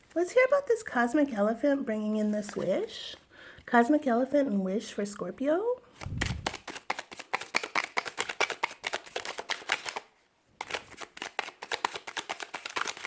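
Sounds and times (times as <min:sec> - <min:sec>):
cards being shuffled: 0:06.0 - 0:13.0.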